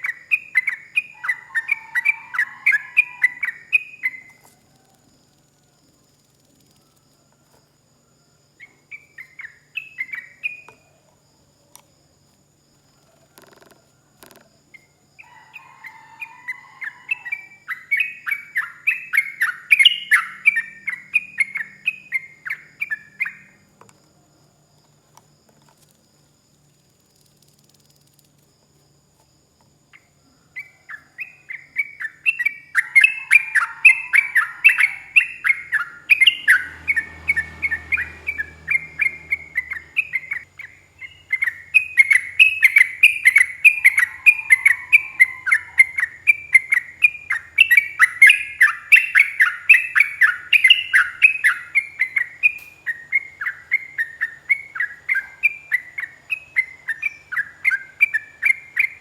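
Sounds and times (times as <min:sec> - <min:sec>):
bulbul singing rapid whistles: 0:08.6 - 0:10.7, 0:17.0 - 0:23.6, 0:30.6 - 0:59.0.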